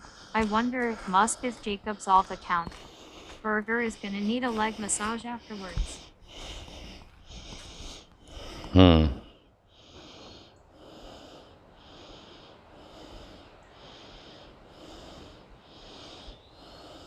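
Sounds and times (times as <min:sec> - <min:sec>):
person breathing hard: 0:00.0 - 0:01.6, 0:02.2 - 0:03.4, 0:04.0 - 0:17.0.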